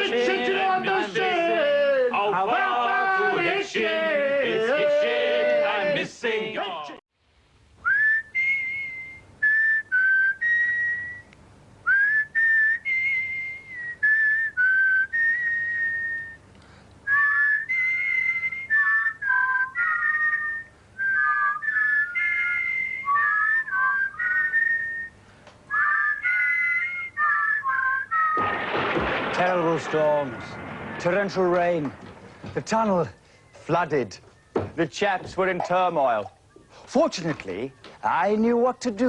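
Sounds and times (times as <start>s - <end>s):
person whistling a tune: 7.8s - 11.3s, 11.9s - 16.4s, 17.1s - 28.4s
whistled harmony line: 7.8s - 16.4s, 17.1s - 28.6s, 33.4s - 34.8s.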